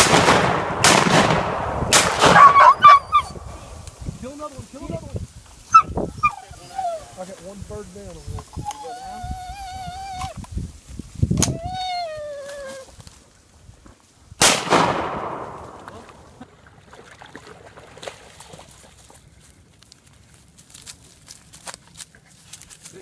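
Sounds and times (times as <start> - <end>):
shotgun shots: 0.0 - 2.8, 14.4 - 16.3.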